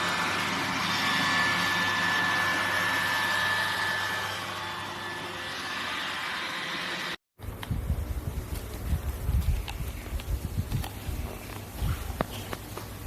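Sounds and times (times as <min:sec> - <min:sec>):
robot vacuum cleaner whirring: 0:00.0 - 0:07.2.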